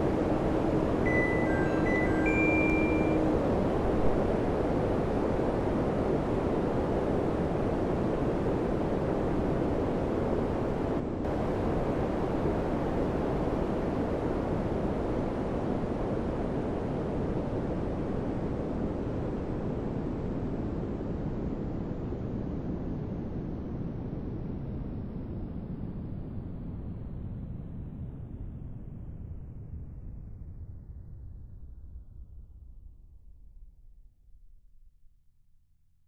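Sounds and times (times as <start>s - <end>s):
air conditioner fan airflow: 0.0s - 28.4s.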